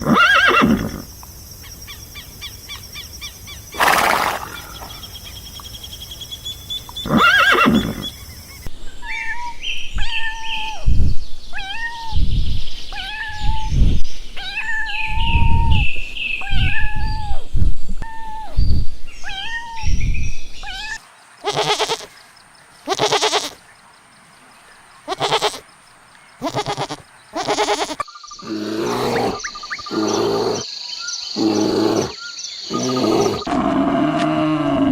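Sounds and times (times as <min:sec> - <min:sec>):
farm animal calls: 0:00.0 - 0:08.7, 0:20.7 - 0:22.1, 0:22.8 - 0:23.6, 0:25.0 - 0:25.7, 0:26.4 - 0:30.7, 0:31.4 - 0:34.9.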